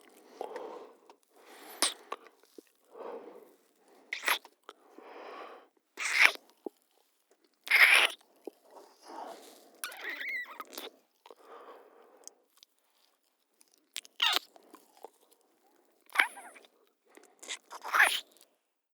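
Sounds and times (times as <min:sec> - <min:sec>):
wet kissing lip smacks: 0:01.8 - 0:02.1, 0:04.2 - 0:04.5.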